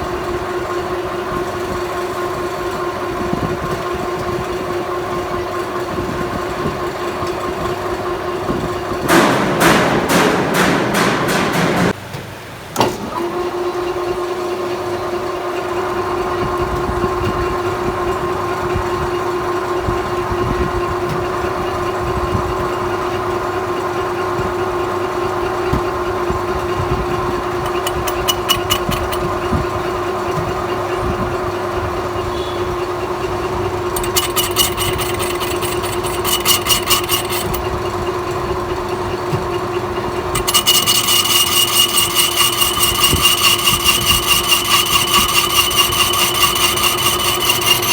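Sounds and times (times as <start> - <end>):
metal lathe humming: 27.4 - 29.5, 33.9 - 38.4, 40.3 - 47.9.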